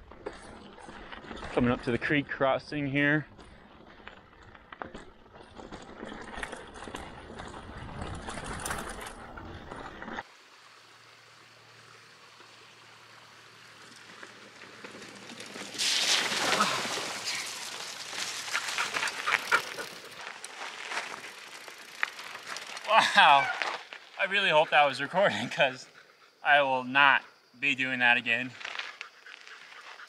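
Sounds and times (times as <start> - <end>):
bike rattling over rocks: 3.3 - 10.3, 12.4 - 24.5
rough splashing and clattering: 14.0 - 22.9.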